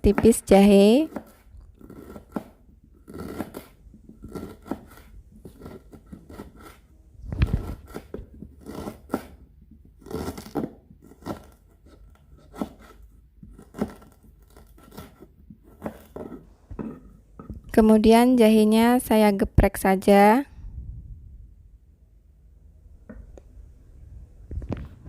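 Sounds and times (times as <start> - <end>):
knife slicing ginger: 0.0 - 17.0.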